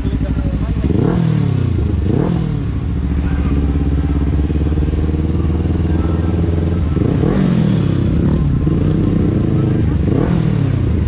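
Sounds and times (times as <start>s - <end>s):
motorcycle engine running: 0.0s - 11.0s.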